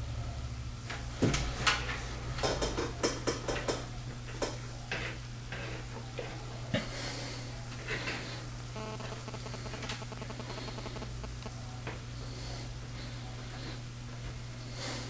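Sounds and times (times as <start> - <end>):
steady low hum: 0.0 - 15.0
tools clicking on wires: 2.4 - 5.7.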